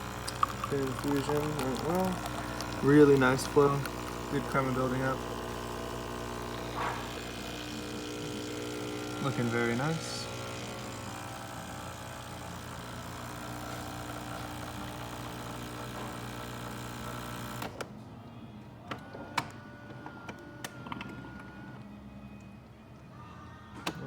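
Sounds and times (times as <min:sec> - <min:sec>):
espresso machine pump humming: 0:00.0 - 0:17.7.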